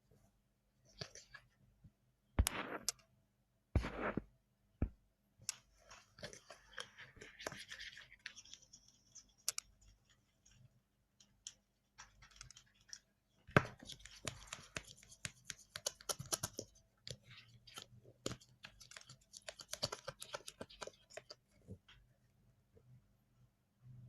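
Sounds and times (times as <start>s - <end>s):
utensil stirring slime: 5.5s - 21.8s.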